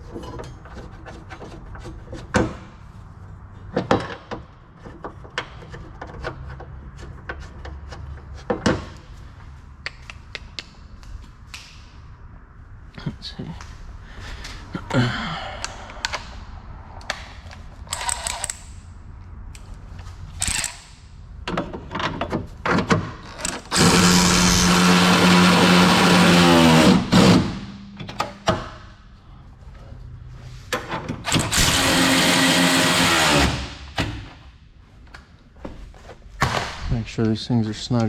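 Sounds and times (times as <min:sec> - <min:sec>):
power tool motor running: 0:23.4 - 0:27.6, 0:31.3 - 0:33.7.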